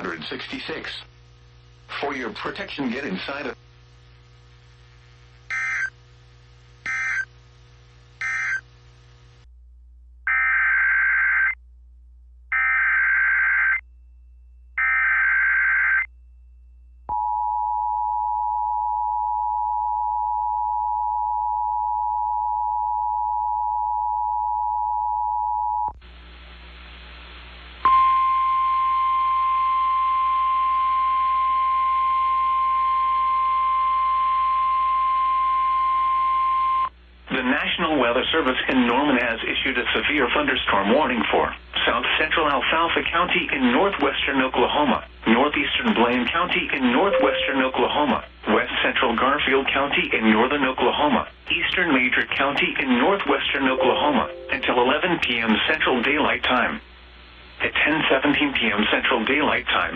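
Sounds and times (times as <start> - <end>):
radio hiss: 0.0 - 9.4, 26.0 - 27.8, 37.2 - 59.9
single-pitch warning alarm tone: 5.5 - 5.9, 6.9 - 7.3, 8.2 - 8.6, 47.1 - 47.7, 53.8 - 54.9
two-tone attention signal: 47.1 - 47.8, 53.8 - 54.9.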